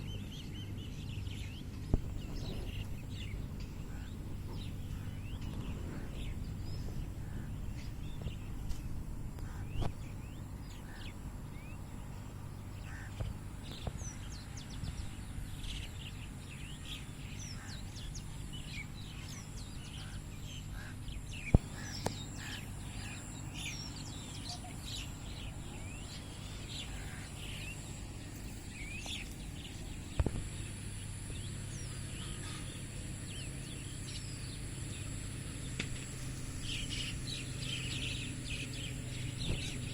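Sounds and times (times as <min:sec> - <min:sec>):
low background rumble: 0:00.0 - 0:39.9
small birds chirping: 0:00.0 - 0:39.9.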